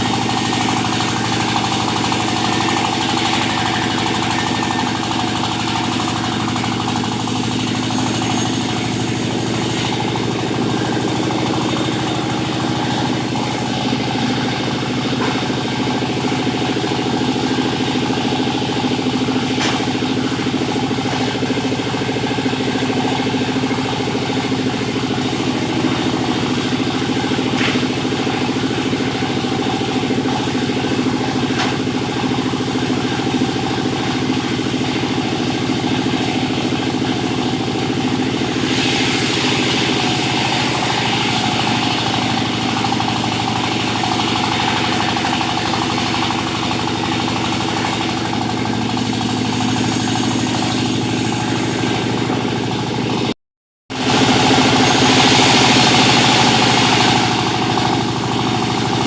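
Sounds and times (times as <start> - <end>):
sawmill engine drone: 0.0 - 53.3, 53.9 - 59.0
saw hissing through wood: 0.1 - 15.4, 38.3 - 52.2.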